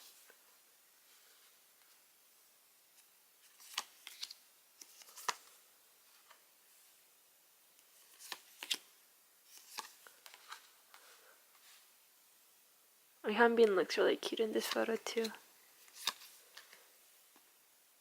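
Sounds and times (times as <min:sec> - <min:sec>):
photo cards clicking and slapping: 0:03.0 - 0:05.6, 0:07.9 - 0:08.9, 0:09.5 - 0:11.0, 0:14.6 - 0:16.9.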